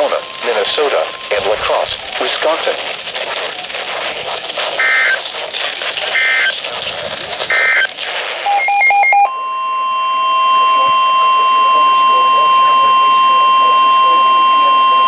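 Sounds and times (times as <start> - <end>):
alternating beeps: 0.0 - 6.8, 7.4 - 15.0
radio hiss: 0.0 - 9.3
screeching data bursts: 0.0 - 9.3.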